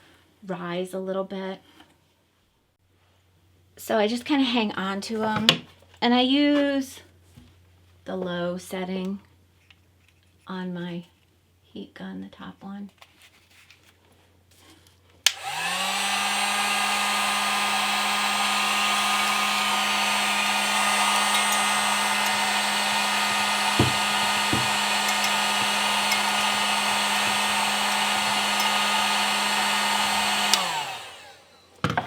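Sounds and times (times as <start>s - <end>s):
heat gun switch click: 15.3s - 31.4s
heat gun fan whirring: 15.3s - 32.0s.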